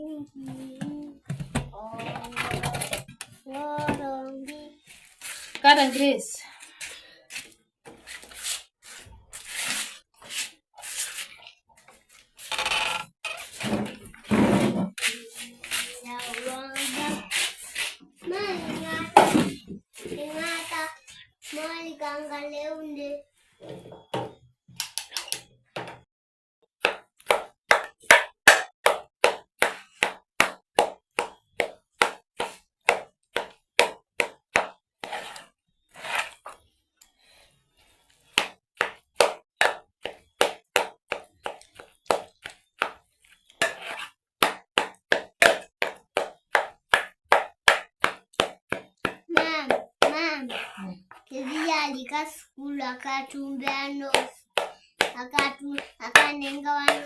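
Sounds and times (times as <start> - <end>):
hands clapping in rhythm: 27.7 - 29.5.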